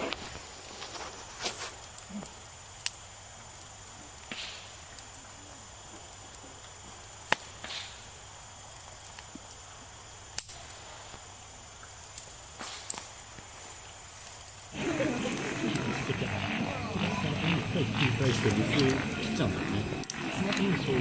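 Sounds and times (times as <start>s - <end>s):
campfire crackling: 0.0s - 21.0s
fire hissing: 6.8s - 21.0s
burning wood popping: 14.8s - 21.0s.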